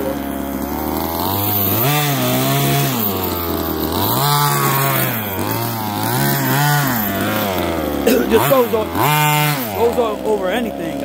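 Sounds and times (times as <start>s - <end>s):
small two-stroke engine revving: 0.0s - 11.0s.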